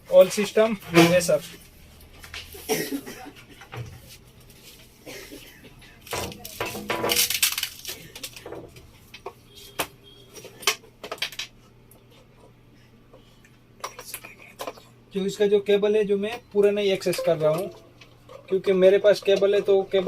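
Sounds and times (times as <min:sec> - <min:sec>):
cables clattering on desk: 0:06.0 - 0:11.6.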